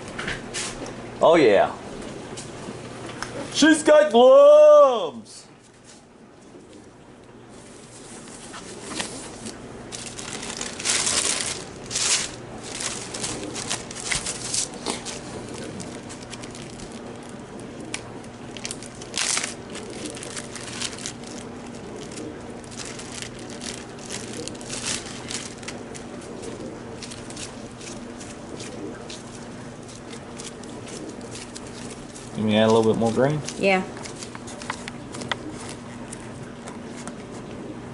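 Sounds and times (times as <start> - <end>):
faint low hum: 3.0 - 37.9
plastic crinkling: 7.6 - 37.2.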